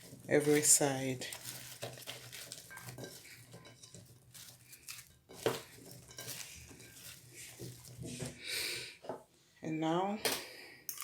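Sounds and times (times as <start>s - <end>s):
utensil scraping and clinking bowl: 0.0s - 8.4s
vegetables tossed in a bowl: 0.0s - 8.4s.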